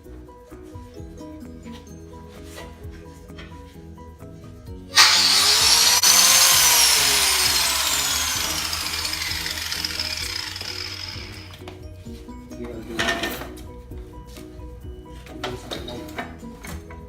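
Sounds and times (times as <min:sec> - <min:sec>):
angle grinder hiss and whine: 0:05.0 - 0:11.6.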